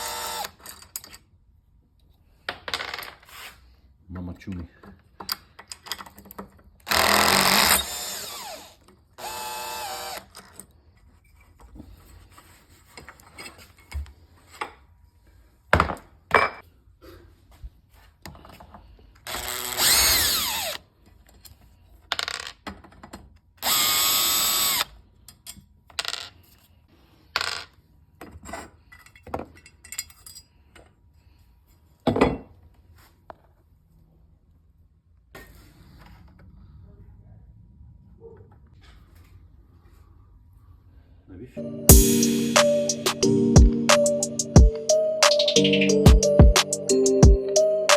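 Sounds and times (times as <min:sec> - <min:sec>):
cordless power drill whining: 0:00.0 - 0:00.6, 0:06.9 - 0:10.4, 0:19.3 - 0:20.8, 0:23.6 - 0:24.9.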